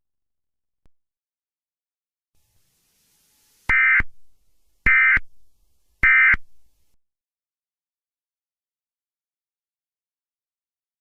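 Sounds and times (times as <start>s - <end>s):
digital data tone bursts: 3.7s - 4.1s, 4.9s - 5.3s, 6.0s - 6.4s.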